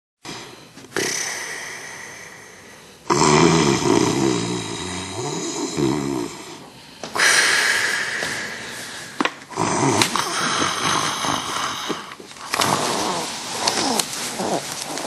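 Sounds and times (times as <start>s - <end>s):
woman snoring: 0.3s - 15.0s
breathy draw of air: 6.4s - 9.5s.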